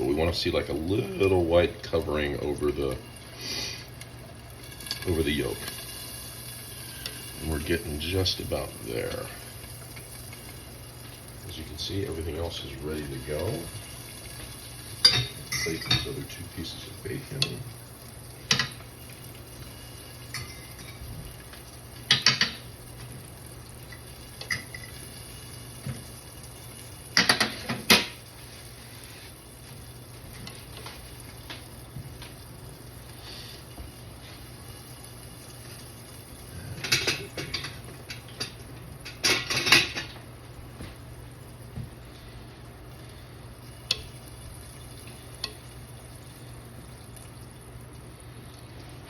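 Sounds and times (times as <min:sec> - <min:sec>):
utensils and dishes clattering: 0:36.7 - 0:40.2.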